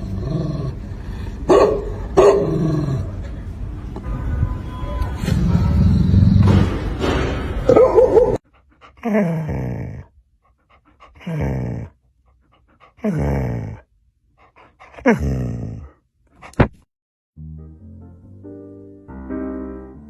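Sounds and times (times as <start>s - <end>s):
dog whining groans: 0.0s - 1.5s, 4.8s - 6.7s, 7.8s - 13.8s, 14.4s - 16.0s
dog noisy vocalising: 7.7s - 13.8s, 14.4s - 16.6s.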